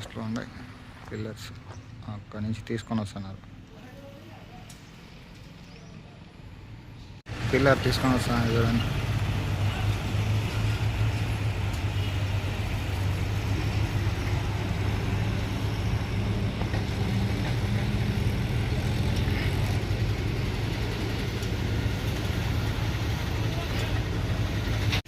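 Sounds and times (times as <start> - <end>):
diesel engine humming: 0.0 - 25.0.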